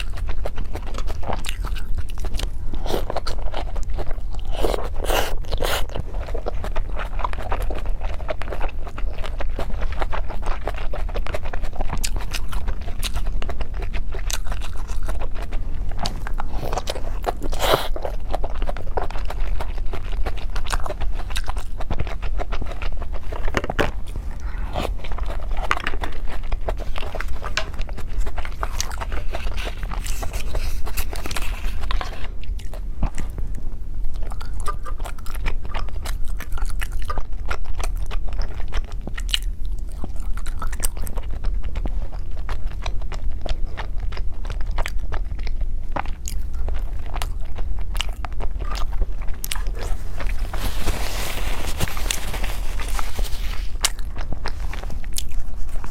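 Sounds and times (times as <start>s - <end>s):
chewing and mouth sounds: 0.0s - 55.9s
low hum: 20.3s - 36.0s.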